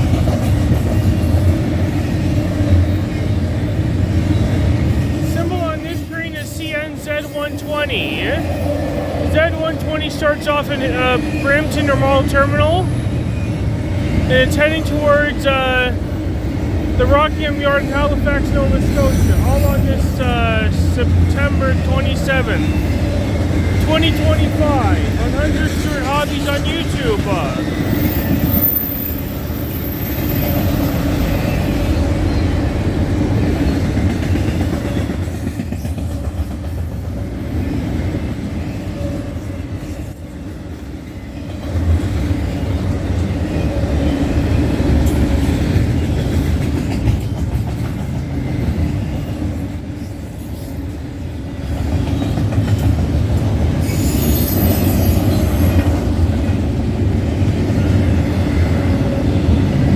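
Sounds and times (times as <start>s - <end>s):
freight train rolling past: 0.0s - 59.9s
wheels clickety-clack: 0.0s - 59.9s
high wheel squeal: 0.4s - 14.3s, 18.7s - 19.9s, 25.1s - 40.2s, 53.8s - 56.0s.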